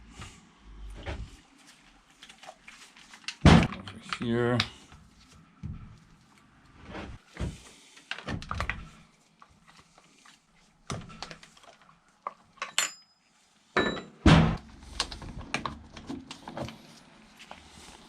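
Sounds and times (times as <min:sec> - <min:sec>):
tools and parts being handled: 0:08.0 - 0:14.2
heavy thunk: 0:14.3 - 0:14.6.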